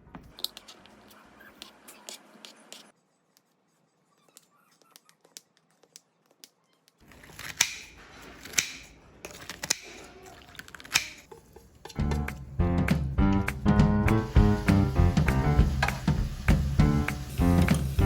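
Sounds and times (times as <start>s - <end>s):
utensils clicking and knocking: 4.9s - 12.4s.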